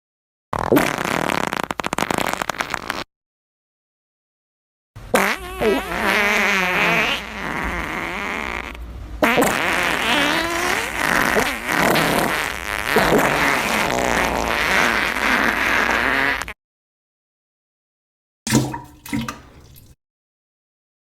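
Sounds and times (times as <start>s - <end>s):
fart sound effect: 0.6s - 3.1s, 5.1s - 16.6s.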